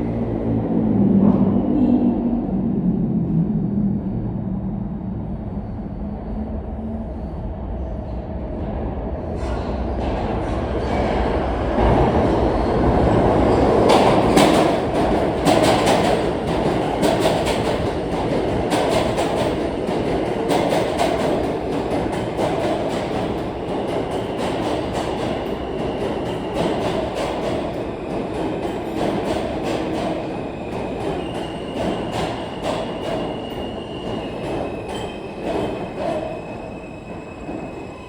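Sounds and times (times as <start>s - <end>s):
subway train wheels clacking: 0.0s - 38.0s.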